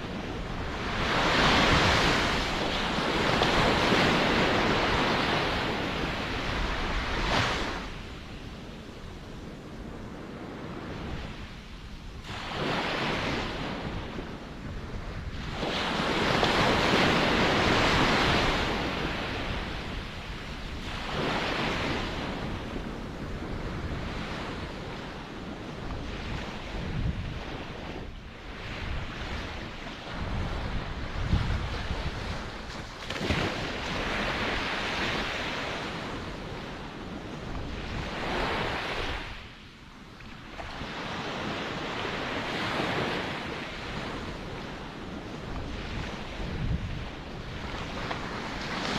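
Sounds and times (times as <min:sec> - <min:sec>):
ocean waves surging: 0:00.0 - 0:08.4
wind rumbling on microphone: 0:00.0 - 0:48.9.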